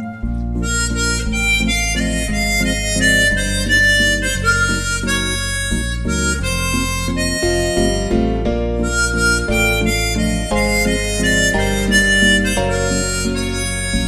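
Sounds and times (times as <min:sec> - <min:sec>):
harmonica melody: 0:00.0 - 0:14.0
sustained low bass notes: 0:00.0 - 0:14.0.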